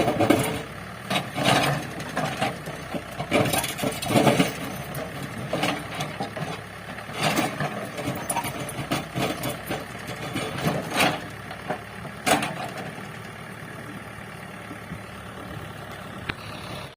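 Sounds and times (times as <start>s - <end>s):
demolition clanks and knocks: 0.0s - 13.0s
heavy machine engine running: 0.0s - 16.9s.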